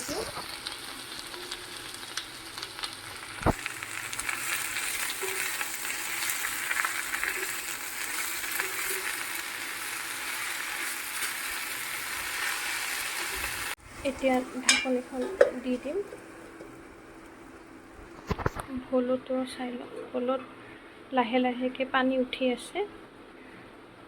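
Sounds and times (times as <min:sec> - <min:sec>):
greens sizzling in a pan: 0:00.0 - 0:17.6.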